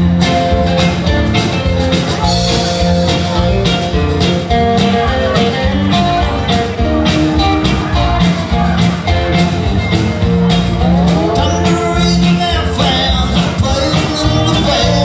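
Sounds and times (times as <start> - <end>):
guitar: 0.0 - 15.0
live rock band playing: 0.0 - 15.0
steady drum beat: 0.0 - 15.0.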